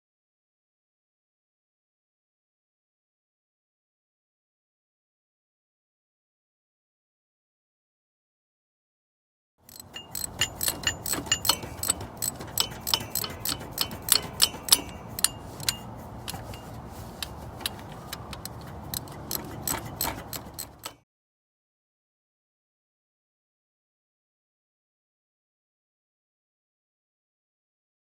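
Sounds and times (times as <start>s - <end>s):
metal tools clinking: 9.7s - 21.0s
low steady rumble: 9.9s - 20.9s.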